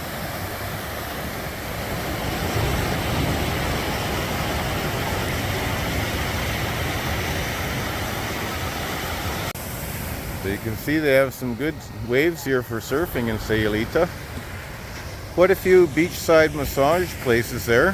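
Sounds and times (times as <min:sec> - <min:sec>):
ocean waves breaking: 0:00.0 - 0:17.9.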